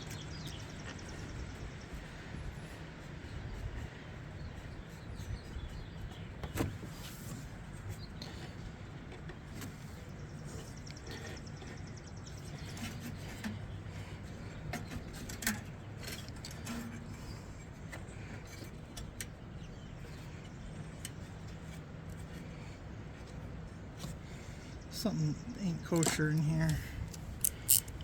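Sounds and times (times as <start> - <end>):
hand tools clicking on metal: 26.0 - 28.0.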